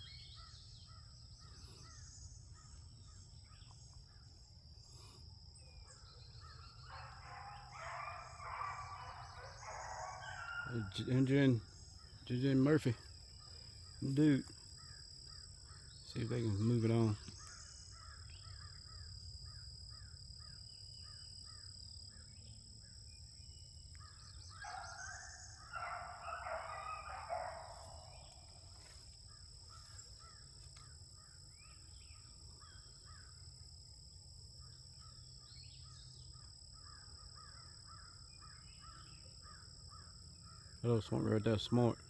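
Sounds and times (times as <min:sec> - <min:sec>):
hounds baying: 0:05.9 - 0:12.8, 0:24.6 - 0:29.1.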